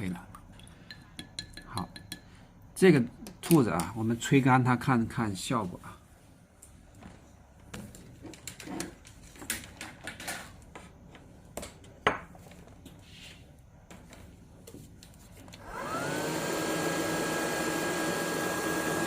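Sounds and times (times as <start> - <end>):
hair dryer blowing: 15.6 - 19.0.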